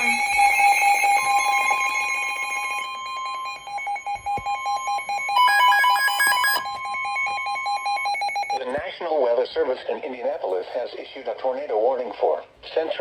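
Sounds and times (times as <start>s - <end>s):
electronic alarm tones: 0.0s - 8.8s.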